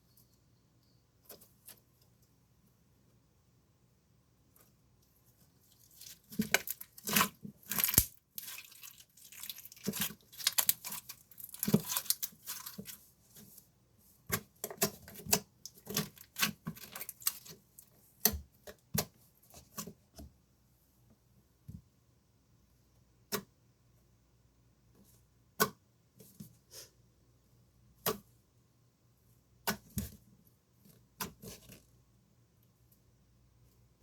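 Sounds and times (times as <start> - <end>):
slime popping and crackling: 6.0 - 12.8.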